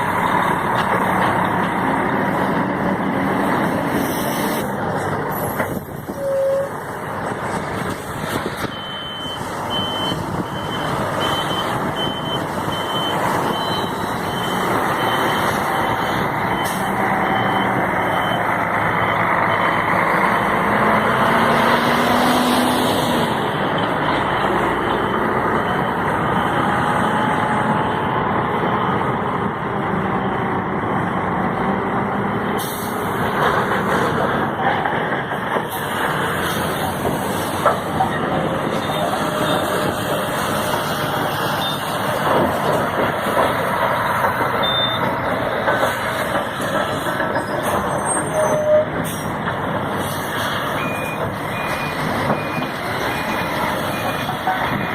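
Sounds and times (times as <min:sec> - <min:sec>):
heavy construction machine running: 0:00.0 - 0:54.9
reversing alarm beeping: 0:06.2 - 0:06.7, 0:08.6 - 0:19.8, 0:25.0 - 0:26.9, 0:44.6 - 0:45.2, 0:50.8 - 0:54.9.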